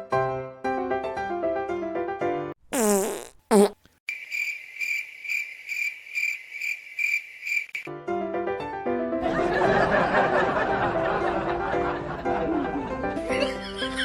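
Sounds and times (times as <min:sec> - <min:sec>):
fart sound effect: 0:02.7 - 0:03.9
cricket chirping sound effect: 0:04.1 - 0:07.9.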